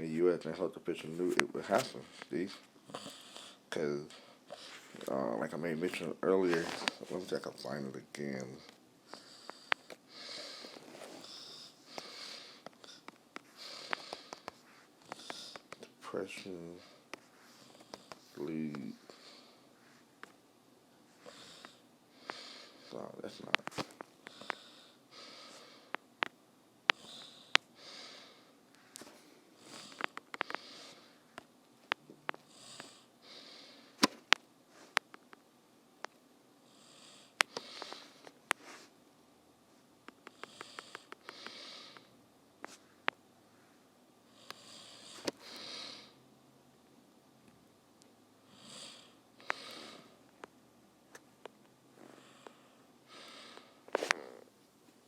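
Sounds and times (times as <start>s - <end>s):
person breathing and sniffing: 1.6s - 5.1s, 8.6s - 15.8s, 21.1s - 23.0s, 23.6s - 26.0s, 26.9s - 31.3s, 37.0s - 39.0s, 40.3s - 42.1s, 48.8s - 50.2s.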